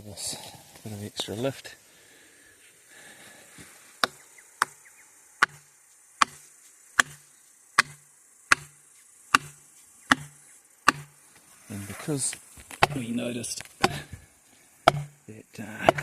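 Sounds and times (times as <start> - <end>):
hammer striking wedge: 5.4 - 5.6, 7.0 - 7.2, 7.8 - 11.1, 12.8 - 13.0, 13.8 - 14.0, 14.8 - 15.2.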